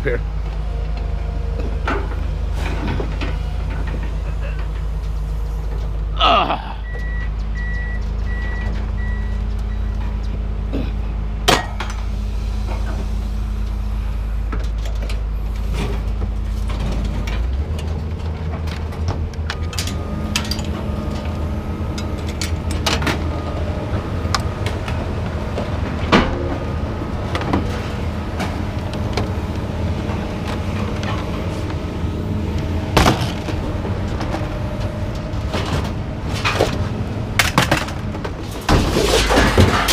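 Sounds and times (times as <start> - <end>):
vehicle engine running: 0.0 - 39.9
scrap metal clanking: 32.9 - 39.9.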